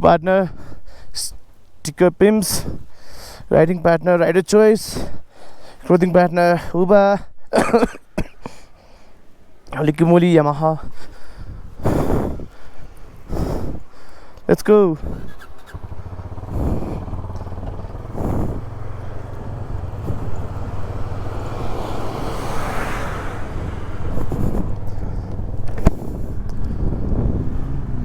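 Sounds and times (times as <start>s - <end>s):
motorcycle engine running: 11.8s - 28.0s.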